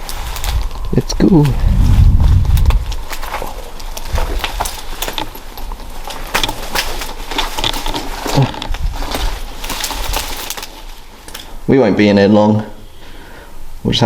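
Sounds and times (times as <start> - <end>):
footsteps crunching over debris: 0.0 - 11.8
cracks and rustles of undergrowth: 0.0 - 11.9
low rumble of handling or wind: 0.0 - 13.8.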